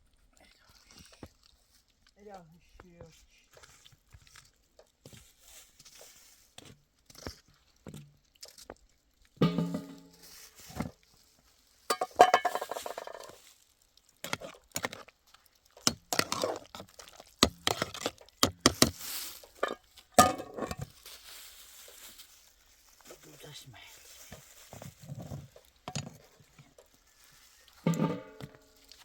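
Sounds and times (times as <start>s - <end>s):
dishes and utensils clinking: 9.4s - 10.2s, 11.9s - 13.4s, 19.6s - 20.9s, 27.8s - 28.8s.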